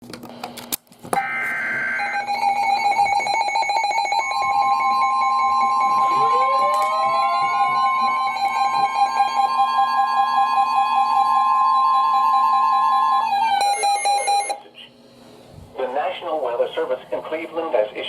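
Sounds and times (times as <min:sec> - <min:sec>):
two-tone alert alarm: 0:01.2 - 0:12.6, 0:13.3 - 0:14.6.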